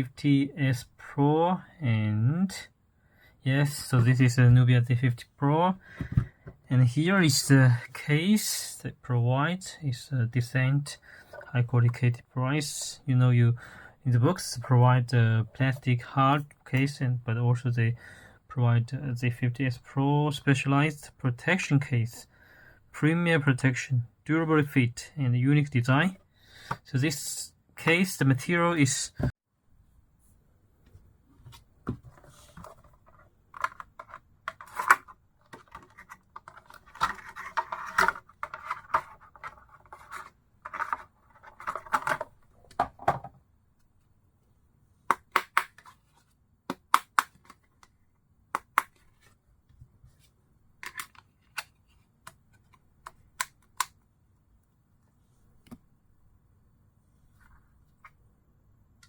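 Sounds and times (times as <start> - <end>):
plastic phone case scraping: 32.0 - 42.2.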